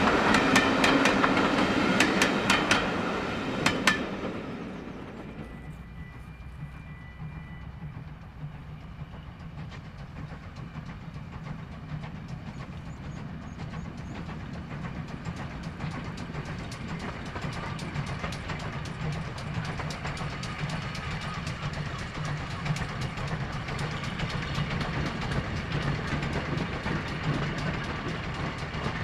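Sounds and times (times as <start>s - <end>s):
steam train rumble: 0.0s - 29.0s
train wheels clicking: 0.0s - 29.0s.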